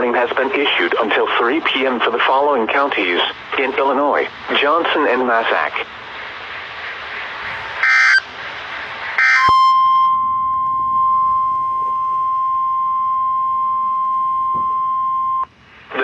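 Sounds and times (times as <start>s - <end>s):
single-tone warning alarm: 7.5s - 8.3s, 9.2s - 15.5s
screechy data bursts: 7.6s - 8.3s.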